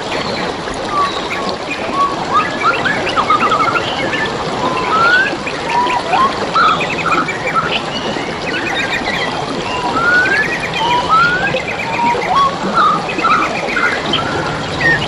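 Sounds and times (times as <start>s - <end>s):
songbirds singing: 0.0s - 15.0s
water trickling: 0.0s - 15.0s.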